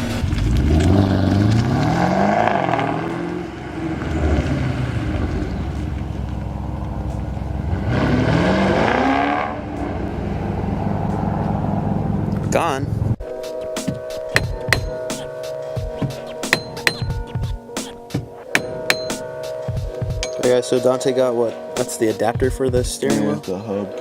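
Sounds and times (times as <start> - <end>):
car engine revving hard: 0.0 - 6.0, 7.0 - 12.3.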